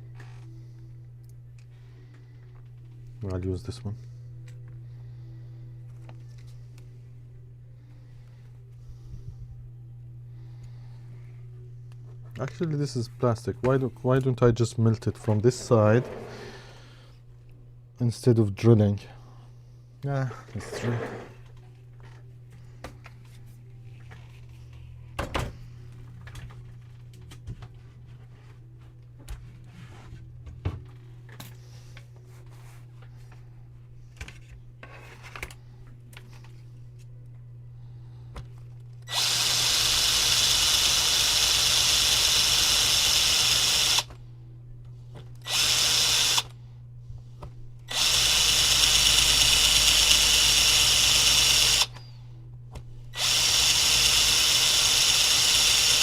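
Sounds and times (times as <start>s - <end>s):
steady low hum: 0.0s - 56.0s
handheld power tool bursts: 39.1s - 44.1s, 45.4s - 46.5s, 47.9s - 52.0s, 53.2s - 56.0s.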